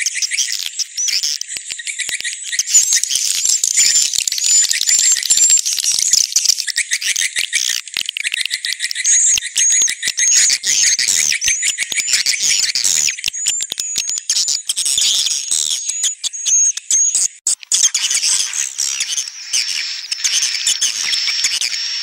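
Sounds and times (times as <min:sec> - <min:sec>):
fast clicking trills: 0:00.2 - 0:10.5, 0:11.1 - 0:22.0
swiftlets twittering: 0:13.8 - 0:22.0.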